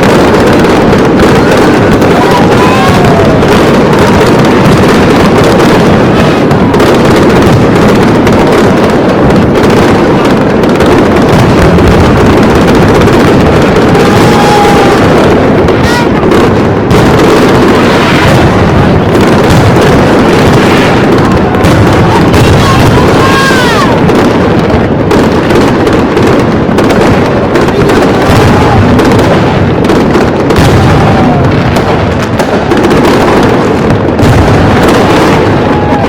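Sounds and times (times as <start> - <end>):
fireworks bursting and crackling: 0.0 - 36.0
onlookers' voices: 0.0 - 36.0.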